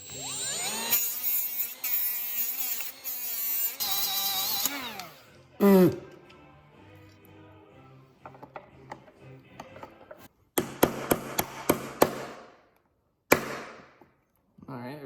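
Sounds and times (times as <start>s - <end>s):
rotary grinding tool whining: 0.0s - 5.4s.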